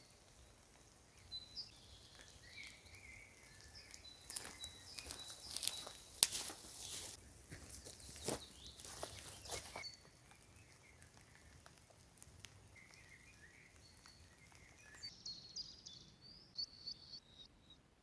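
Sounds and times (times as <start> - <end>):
bird warbling song: 0.0 - 7.1, 12.6 - 17.8
rapid high bird chirps: 12.7 - 17.8.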